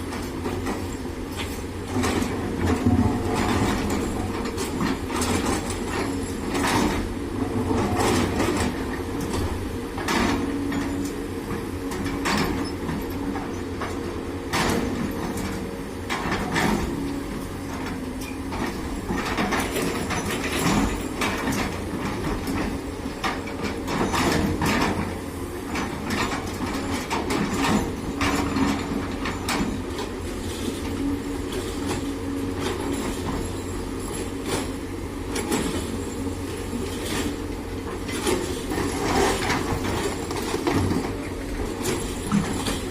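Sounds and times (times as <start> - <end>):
excavator diesel engine running: 0.0 - 42.9
soil and stone clanking into truck bed: 38.0 - 42.9.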